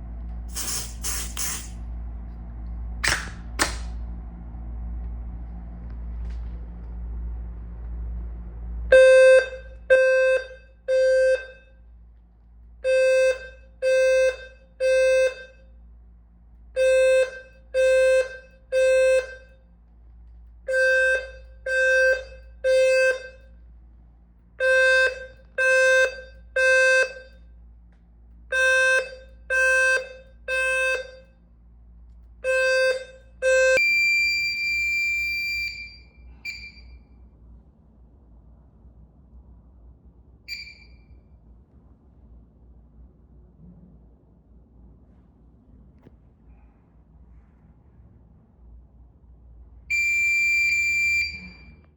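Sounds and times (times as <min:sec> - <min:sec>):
short electronic chirp: 0:00.5 - 0:01.7
smoke alarm buzzing beeps: 0:00.5 - 0:01.8, 0:08.9 - 0:11.8, 0:12.8 - 0:15.7, 0:16.8 - 0:19.6, 0:20.7 - 0:23.6, 0:24.6 - 0:27.4, 0:28.5 - 0:31.3, 0:32.4 - 0:37.2, 0:40.5 - 0:41.2, 0:49.9 - 0:51.9
steady high electronic tone: 0:00.5 - 0:01.8.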